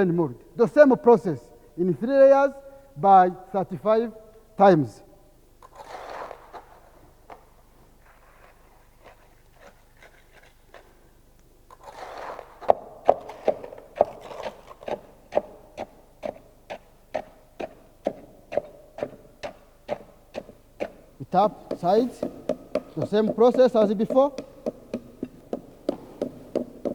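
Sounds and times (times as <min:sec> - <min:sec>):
concrete pouring into mould: 0:11.7 - 0:12.7
tamping rod knocking: 0:11.7 - 0:26.9.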